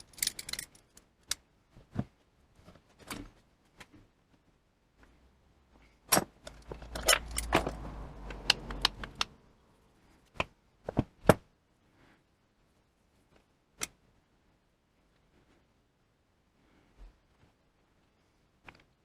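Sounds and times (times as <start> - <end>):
metal parts clinking: 0.0 - 1.0, 6.9 - 7.7
low rumble: 6.8 - 9.9.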